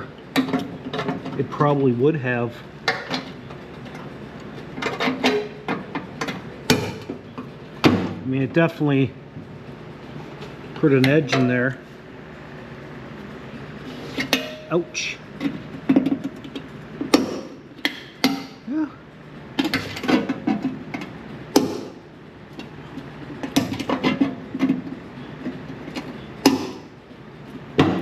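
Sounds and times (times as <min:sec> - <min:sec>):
tools and sheet metal clanking: 0:00.3 - 0:01.5, 0:02.8 - 0:08.2, 0:10.8 - 0:11.7, 0:14.1 - 0:14.8, 0:15.4 - 0:18.6, 0:19.6 - 0:26.9.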